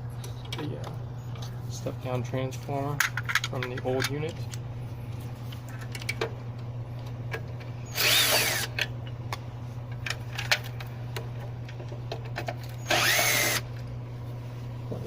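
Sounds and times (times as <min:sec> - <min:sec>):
steady low hum: 0:00.0 - 0:15.0
power drill whining: 0:07.9 - 0:08.7, 0:12.8 - 0:13.7.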